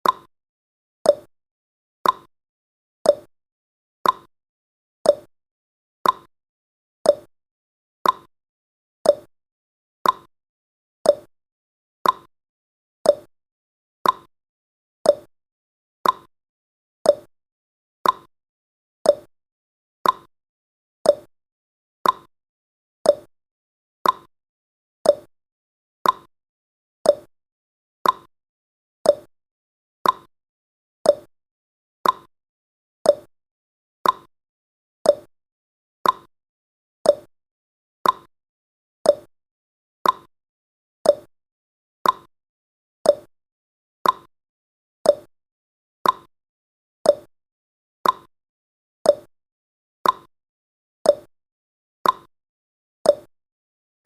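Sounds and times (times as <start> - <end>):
countdown timer ticking: 29.1 - 29.3, 33.1 - 33.3, 35.1 - 35.3, 37.1 - 37.3, 39.1 - 39.3, 41.1 - 41.3, 42.0 - 42.3, 43.1 - 43.3, 47.1 - 47.3.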